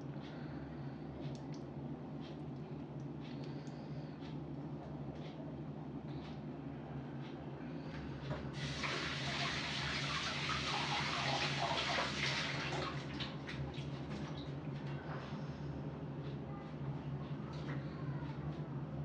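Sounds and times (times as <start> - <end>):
low steady hum: 0.0 - 19.0
water running from tap: 8.5 - 13.7.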